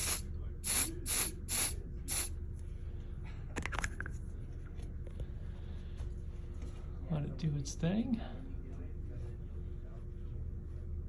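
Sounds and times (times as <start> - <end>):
aerosol can hissing bursts: 0.0 - 2.3.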